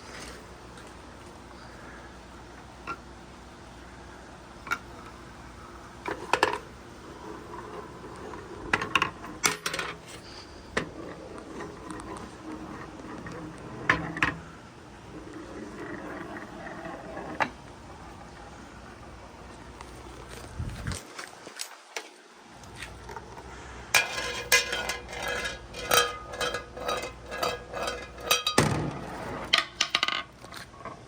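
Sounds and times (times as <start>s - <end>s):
marbles rolling on wooden track: 6.1s - 18.4s, 23.0s - 30.6s.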